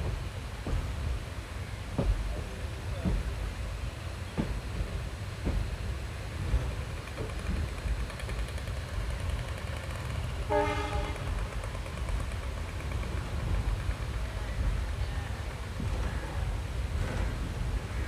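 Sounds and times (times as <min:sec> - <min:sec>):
train rumbling: 0:00.0 - 0:18.0
train horn blast: 0:10.5 - 0:11.4.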